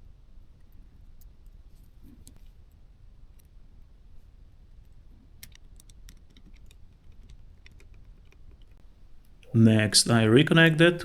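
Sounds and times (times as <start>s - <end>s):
small plastic clicks and taps: 5.4s - 8.8s.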